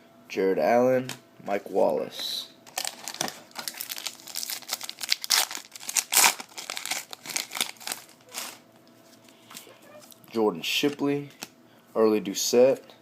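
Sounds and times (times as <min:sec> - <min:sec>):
plastic wrapper tearing and crinkling: 0:02.7 - 0:08.6.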